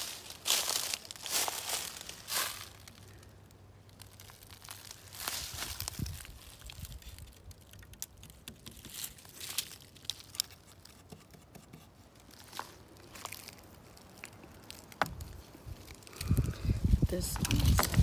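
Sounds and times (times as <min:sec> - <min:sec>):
dry leaves crunching underfoot: 0:00.0 - 0:11.2, 0:12.1 - 0:18.0
twigs snapping: 0:00.0 - 0:16.6, 0:17.4 - 0:18.0.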